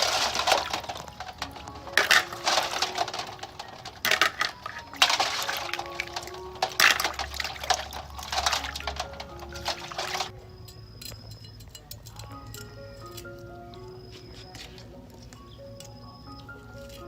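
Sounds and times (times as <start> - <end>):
snail shells clicking together: 0.0 - 10.3, 11.0 - 13.5
soft background music: 0.0 - 17.0.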